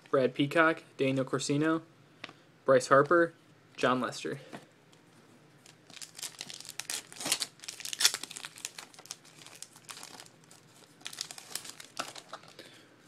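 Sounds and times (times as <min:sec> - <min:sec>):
plastic wrapper tearing and crinkling: 0:05.6 - 0:12.6.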